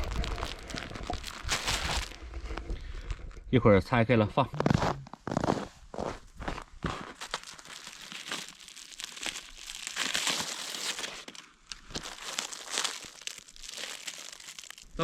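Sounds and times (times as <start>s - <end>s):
paper and plastic wrapping crinkling: 0.0s - 3.3s, 6.8s - 15.0s.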